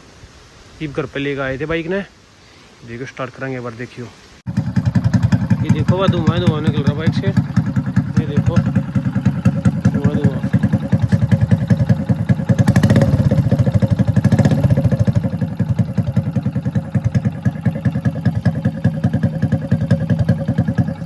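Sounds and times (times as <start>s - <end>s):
motorcycle engine exhaust beat: 4.5s - 21.0s
motorcycle throttle blips: 4.5s - 21.0s.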